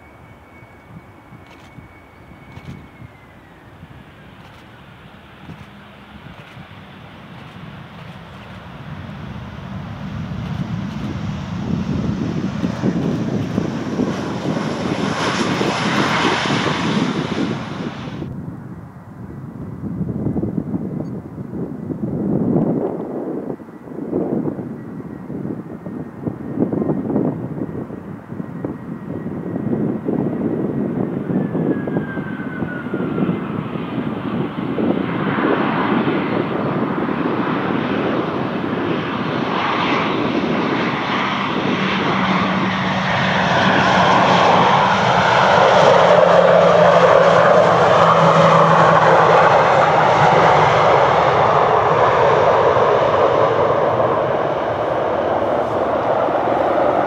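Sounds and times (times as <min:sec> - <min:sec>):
aircraft engine: 0:00.0 - 0:57.0.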